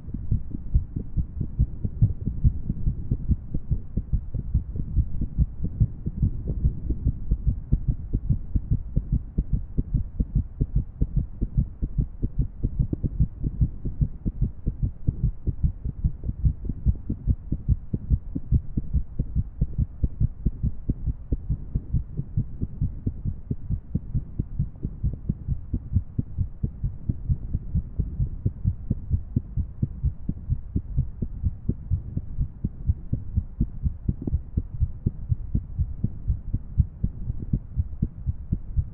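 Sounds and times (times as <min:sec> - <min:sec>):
heartbeat thuds: 0:00.0 - 0:38.9.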